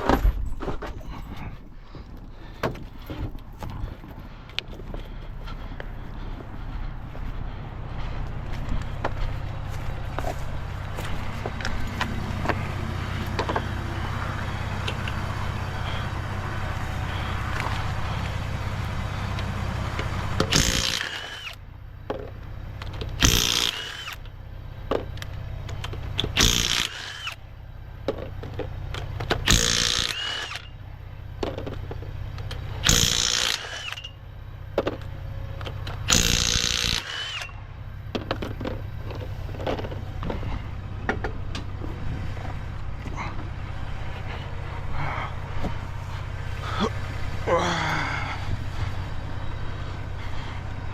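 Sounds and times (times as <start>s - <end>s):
low engine hum: 0.0s - 50.9s
impact wrench bursts: 20.0s - 21.6s, 23.1s - 24.2s, 26.0s - 27.4s, 29.2s - 30.8s, 32.8s - 34.2s, 35.8s - 37.6s.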